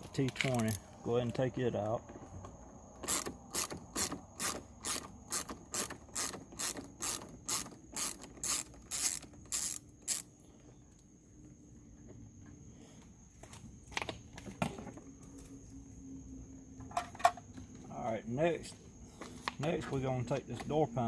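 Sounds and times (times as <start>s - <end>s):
ratchet clicking: 3.0s - 10.3s.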